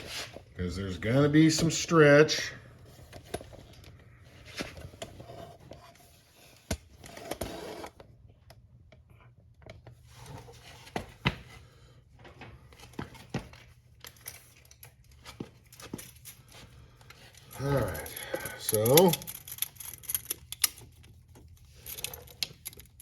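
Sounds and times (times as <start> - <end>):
low steady hum: 0.0 - 23.0
clicks and knocks of tools: 17.0 - 21.1.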